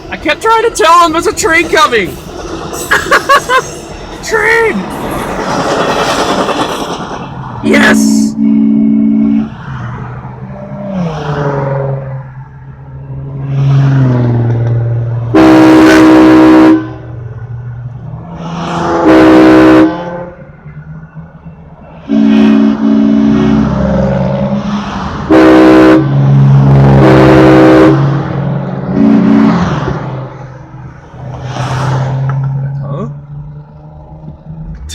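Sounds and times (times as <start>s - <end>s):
air train horn blasts: 7.8s - 9.7s, 15.3s - 17.1s, 18.9s - 20.4s, 22.0s - 30.1s
low drone: 32.3s - 34.9s.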